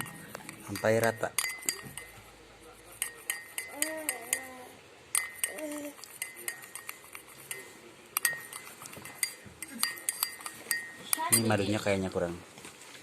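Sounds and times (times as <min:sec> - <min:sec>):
spoon clinking in a glass: 0:00.0 - 0:02.2, 0:02.9 - 0:04.5, 0:05.2 - 0:11.7.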